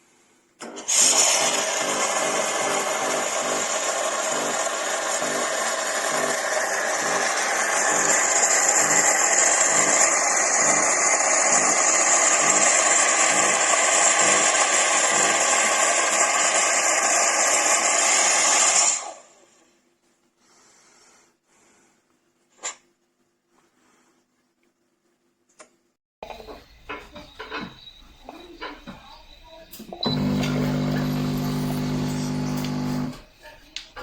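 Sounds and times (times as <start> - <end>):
espresso machine running: 1.5 - 18.5, 29.9 - 33.2.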